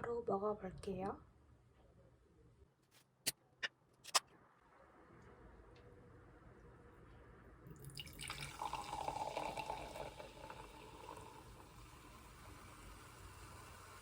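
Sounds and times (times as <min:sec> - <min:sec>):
liquid pouring into a cup: 0:07.7 - 0:14.0.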